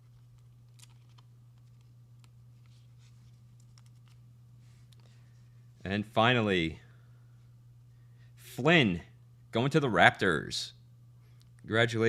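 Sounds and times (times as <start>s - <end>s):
trading cards clicking and scraping: 0.0s - 4.2s
low electrical hum: 0.0s - 12.0s.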